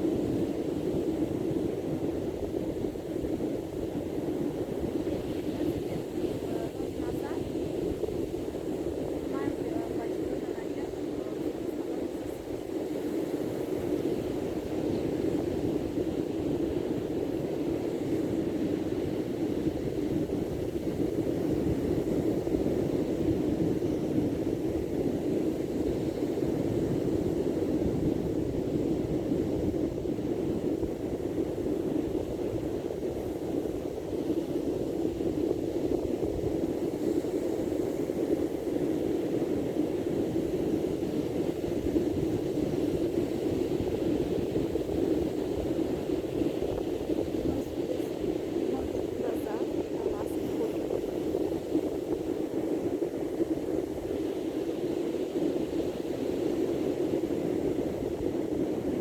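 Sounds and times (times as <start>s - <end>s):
wind: 0.0s - 59.0s
sea surf: 36.7s - 59.0s.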